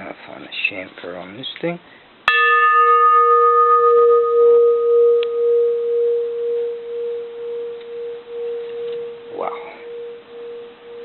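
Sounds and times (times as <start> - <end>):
temple bell ringing: 2.3 - 11.0.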